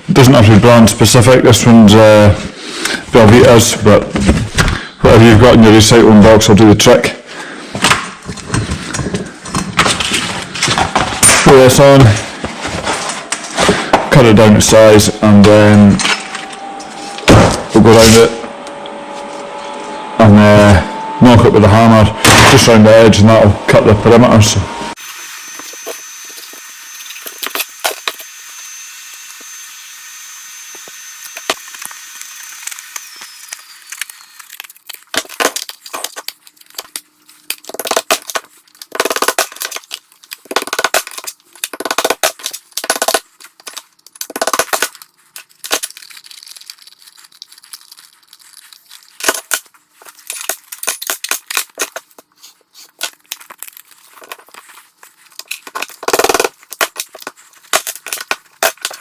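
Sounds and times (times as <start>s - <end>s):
steady hiss with high whine: 20.2s - 34.5s.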